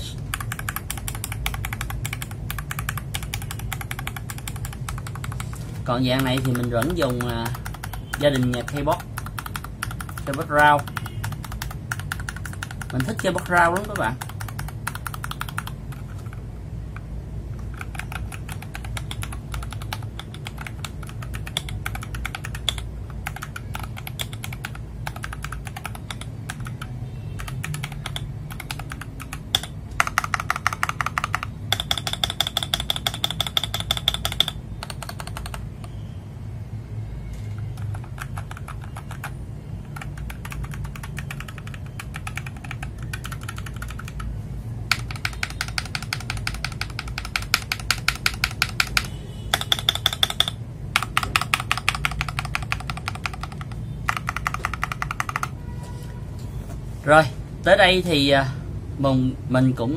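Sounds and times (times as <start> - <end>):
mechanical keyboard typing: 0.0 - 36.0, 37.6 - 55.6.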